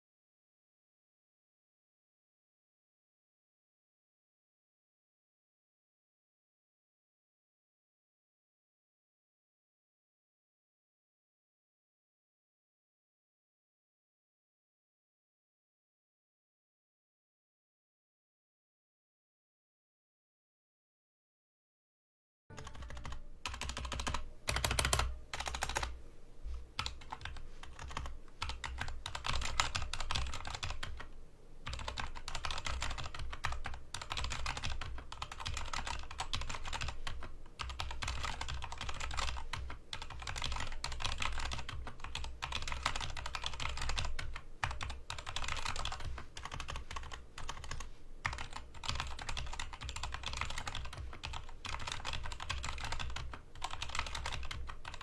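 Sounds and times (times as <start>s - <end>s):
fast mechanical keyboard typing: 22.5s - 26.0s, 26.8s - 55.0s.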